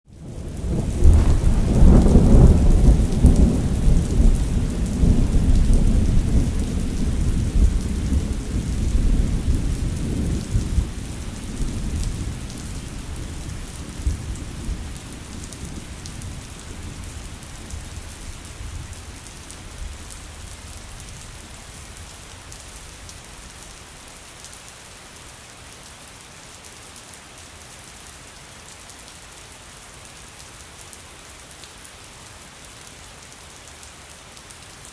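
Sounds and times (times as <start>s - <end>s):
steady rain: 0.1s - 34.9s
thunder rolling: 0.5s - 17.8s.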